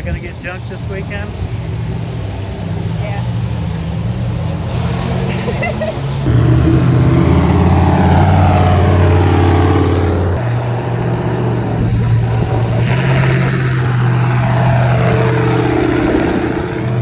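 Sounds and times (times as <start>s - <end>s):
large vehicle engine droning: 6.3s - 17.0s.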